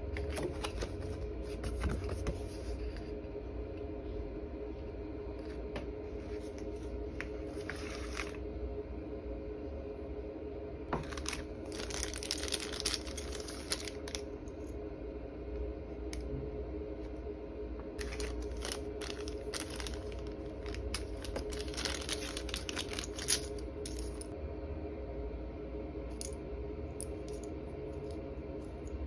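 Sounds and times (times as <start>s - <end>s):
steady low hum: 0.0s - 29.0s
packaging crinkling and rustling: 0.2s - 2.4s, 7.4s - 8.4s, 11.0s - 14.3s, 18.0s - 24.3s.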